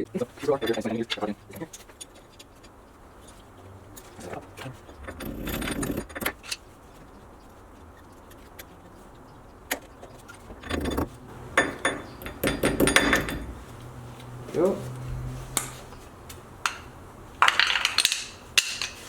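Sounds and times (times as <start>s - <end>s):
metal tools clinking and jangling: 0.2s - 6.6s, 10.2s - 13.7s, 16.7s - 19.0s.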